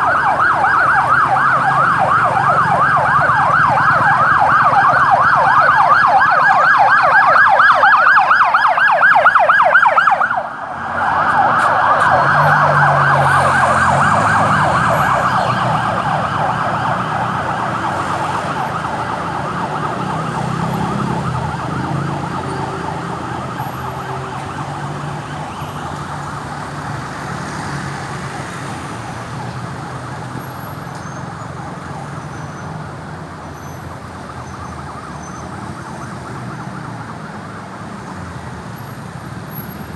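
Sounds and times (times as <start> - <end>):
ambulance siren yelping: 0.0 - 26.7, 27.6 - 33.6, 34.2 - 38.4
vehicle engine: 0.0 - 31.0.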